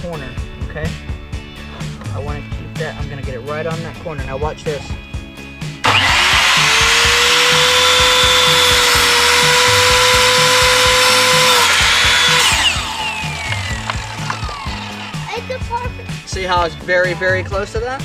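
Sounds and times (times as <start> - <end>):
background music with steady beat: 0.0 - 18.0
electric power saw cutting wood: 5.8 - 16.3.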